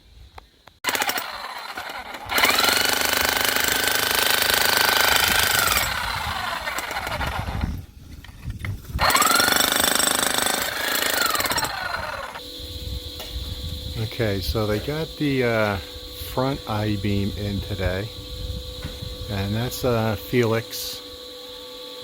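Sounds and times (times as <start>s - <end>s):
jackhammer breaking rock: 0.8s - 7.8s, 8.4s - 12.4s.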